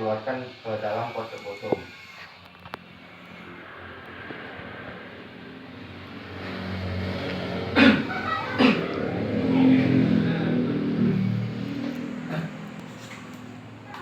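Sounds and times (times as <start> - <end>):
man coughing forcefully: 7.7 - 9.0.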